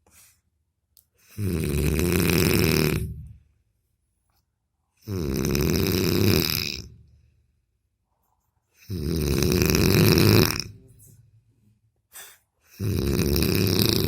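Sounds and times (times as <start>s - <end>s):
man snoring: 1.3s - 3.4s, 5.0s - 7.0s, 8.8s - 10.8s, 12.7s - 14.0s.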